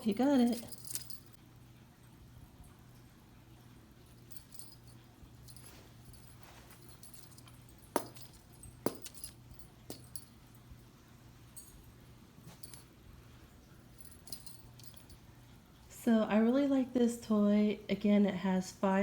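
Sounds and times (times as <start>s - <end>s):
toy rattling and clicking: 0.0s - 1.4s, 4.1s - 10.4s, 13.9s - 15.2s
steady low hum: 0.0s - 19.0s.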